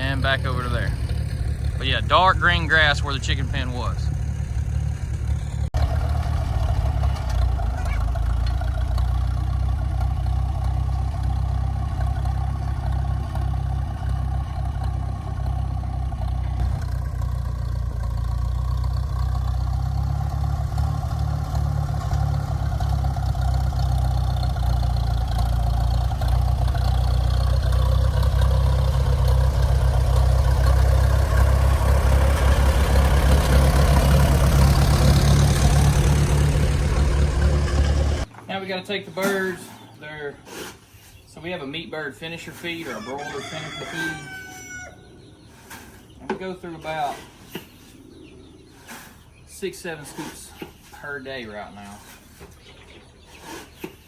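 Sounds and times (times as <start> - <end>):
vehicle engine idling: 0.0 - 38.3.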